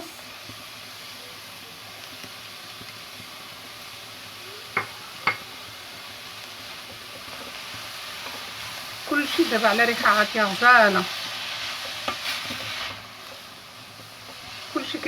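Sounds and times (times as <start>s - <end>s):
food sizzling in a pan: 0.0s - 15.0s.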